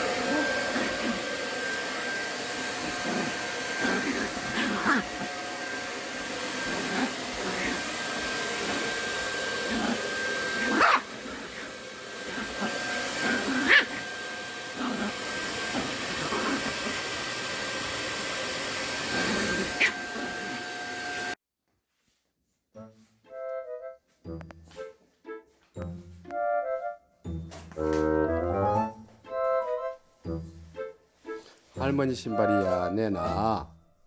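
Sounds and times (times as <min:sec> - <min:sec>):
vacuum cleaner running: 0:00.0 - 0:21.4
dog barking and yipping: 0:00.2 - 0:01.4, 0:02.0 - 0:05.4, 0:06.5 - 0:17.2, 0:19.0 - 0:20.8.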